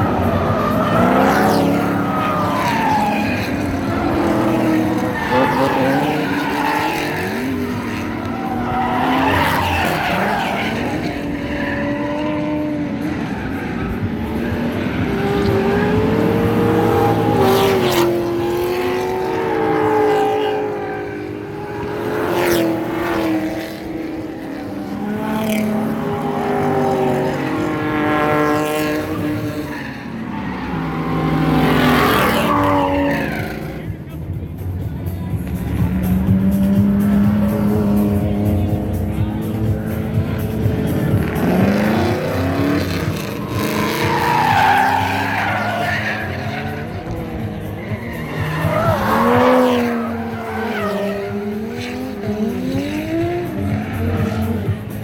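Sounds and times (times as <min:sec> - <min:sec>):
tyres squealing and skidding: 0:00.0 - 0:34.1, 0:36.6 - 0:55.0
car engines revving: 0:00.0 - 0:55.0.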